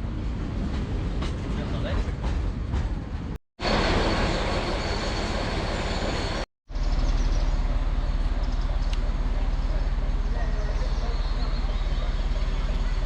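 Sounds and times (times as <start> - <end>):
train rushing noise: 0.0 - 6.5
train low rumble: 0.0 - 13.0.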